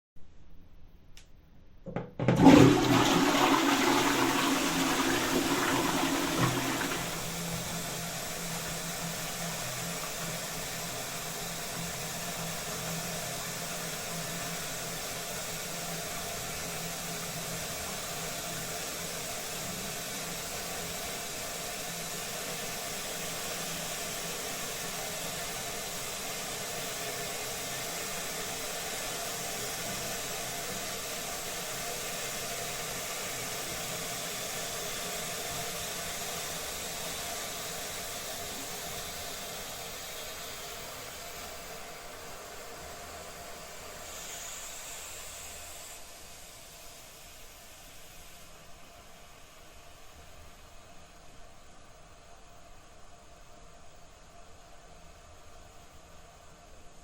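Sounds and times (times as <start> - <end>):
toilet flushing water rush: 2.2 - 20.4
toilet tank refilling hiss: 2.2 - 50.8.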